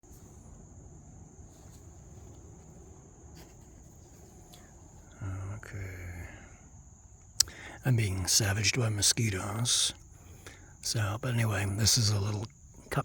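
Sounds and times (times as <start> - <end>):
high-pitched insect trill: 0.0 - 13.0
low hum: 0.0 - 13.0
faint clicks: 1.5 - 5.7, 7.2 - 7.9.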